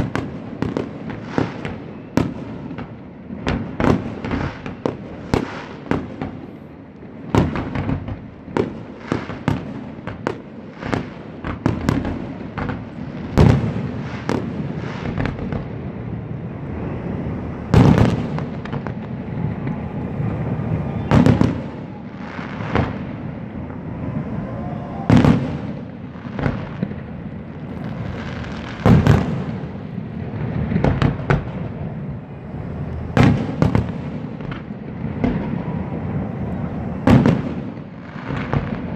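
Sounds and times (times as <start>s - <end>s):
fireworks crackle and rumble: 0.0s - 38.9s
firework shells bursting with bangs: 25.1s - 38.9s.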